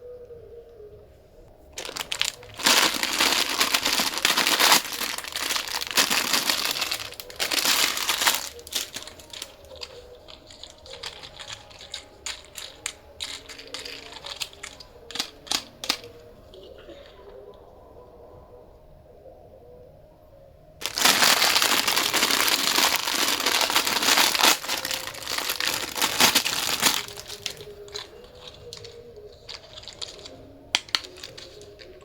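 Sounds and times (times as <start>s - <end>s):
crinkling rustling: 1.4s - 17.1s, 20.8s - 32.0s.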